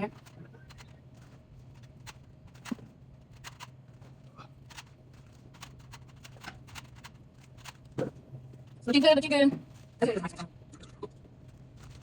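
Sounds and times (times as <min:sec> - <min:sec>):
steady low hum: 0:00.0 - 0:12.0
snack packages rustling and clicking: 0:11.4 - 0:12.0.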